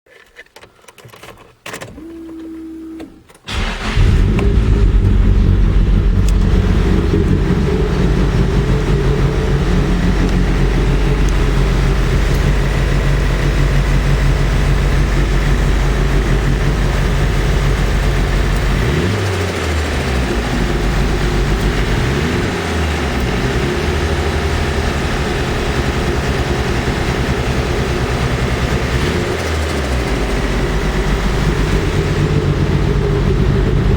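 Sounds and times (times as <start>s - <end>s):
engine cranking: 3.5s - 22.4s
car engine idling roughly: 3.5s - 33.9s
engine revving: 3.5s - 33.9s.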